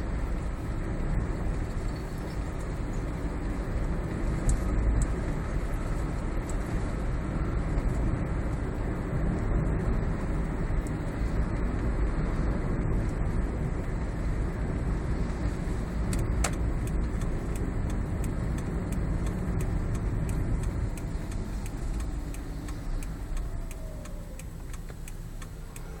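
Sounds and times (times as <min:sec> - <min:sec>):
car cabin rumble: 0:10.3 - 0:26.0.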